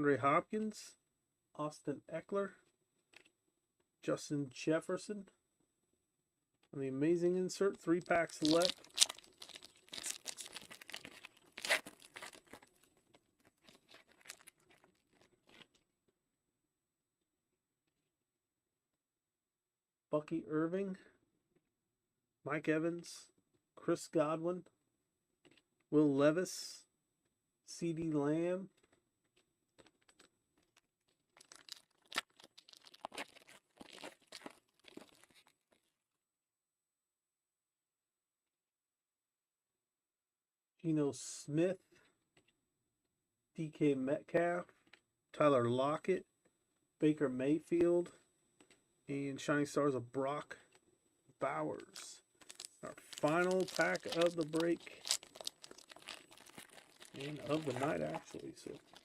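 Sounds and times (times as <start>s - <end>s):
wrapper and cards crinkling: 7.9s - 15.8s, 29.8s - 35.8s, 51.8s - 59.0s
card pack wrapper ripping: 8.0s - 15.7s, 31.4s - 35.5s, 51.8s - 59.0s.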